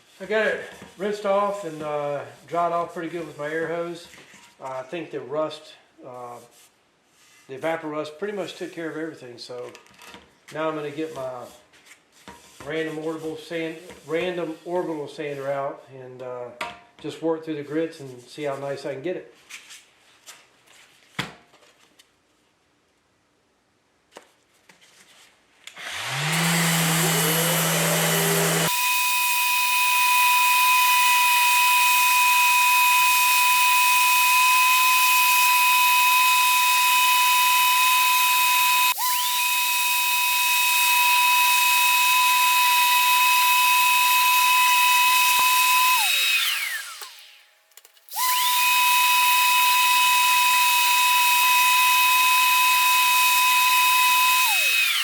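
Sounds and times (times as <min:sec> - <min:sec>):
orbital sander whining: 0:25.8 - 0:47.4, 0:48.1 - 0:55.0.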